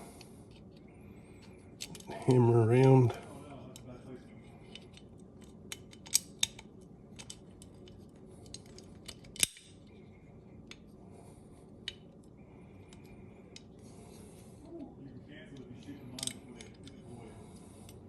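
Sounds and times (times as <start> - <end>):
metallic clicks of gun parts: 4.7 - 9.8, 16.1 - 17.0.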